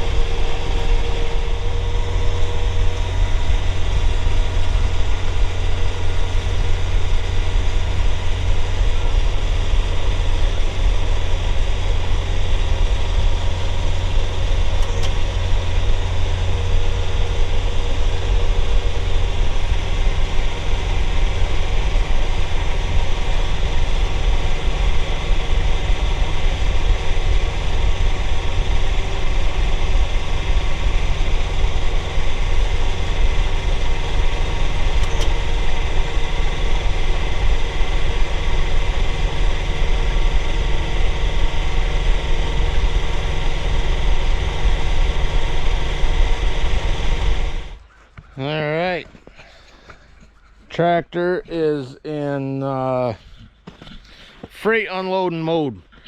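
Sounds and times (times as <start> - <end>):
tractor diesel engine running: 0.0 - 56.0.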